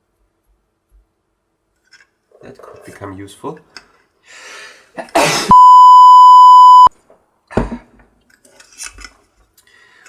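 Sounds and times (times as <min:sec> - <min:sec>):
electronic bleep tone: 0:05.5 - 0:06.9.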